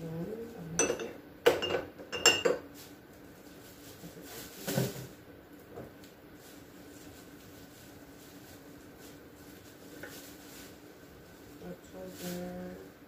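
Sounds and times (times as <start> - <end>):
glass jars clinking: 0.8 - 2.6.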